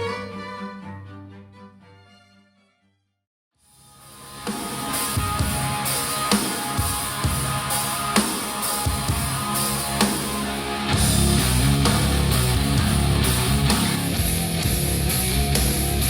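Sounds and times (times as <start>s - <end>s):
rock music with drums and guitar: 3.9s - 16.0s.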